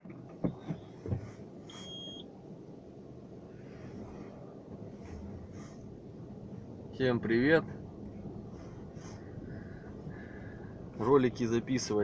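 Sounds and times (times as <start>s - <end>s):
road and engine hum in car: 0.0s - 12.0s
short high beep: 1.7s - 2.3s.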